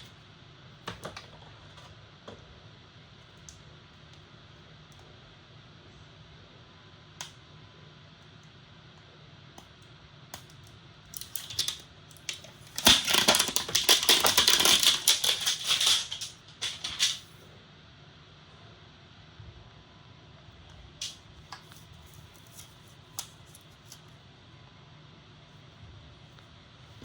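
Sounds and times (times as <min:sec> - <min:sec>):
packaging rustling and crinkling: 0:11.2 - 0:17.3.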